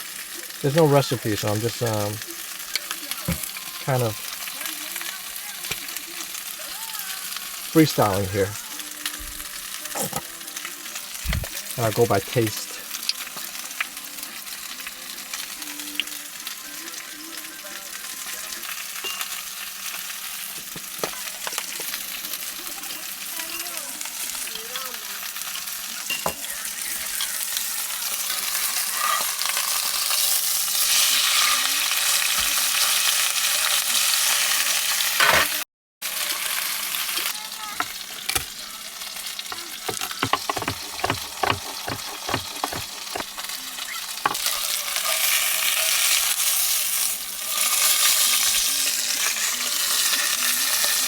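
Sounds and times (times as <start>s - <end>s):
chicken sizzling in a pan: 0.0s - 51.0s
utensil scraping a pan: 9.9s - 10.3s, 39.8s - 43.6s.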